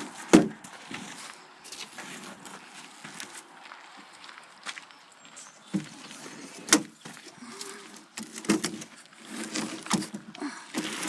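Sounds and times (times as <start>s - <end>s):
wood scraping and clattering: 5.7s - 11.0s.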